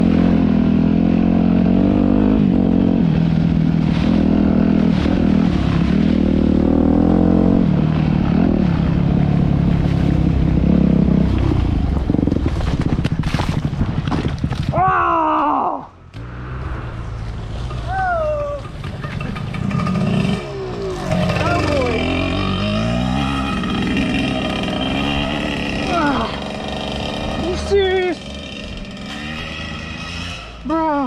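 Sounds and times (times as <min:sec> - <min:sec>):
motorcycle engine revving: 0:00.0 - 0:14.8, 0:16.1 - 0:18.0, 0:18.6 - 0:31.0
engine clattering and scraping: 0:16.2 - 0:30.7.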